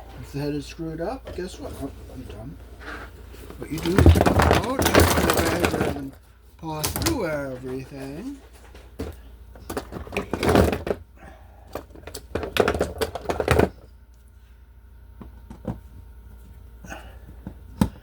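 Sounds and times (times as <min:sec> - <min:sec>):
hand tools clattering: 0:03.5 - 0:11.0.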